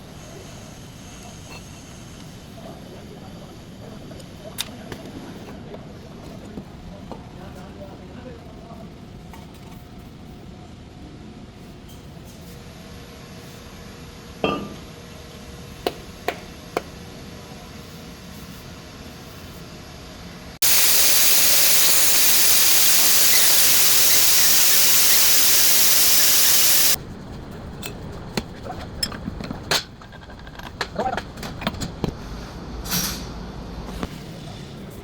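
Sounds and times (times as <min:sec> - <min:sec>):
loud steady hiss: 0:20.6 - 0:27.0.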